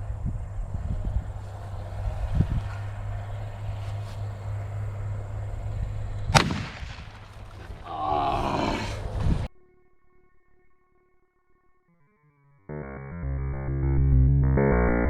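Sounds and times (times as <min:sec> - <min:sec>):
shotgun shot: 0:06.3 - 0:07.8
short vocal yell: 0:07.8 - 0:09.1.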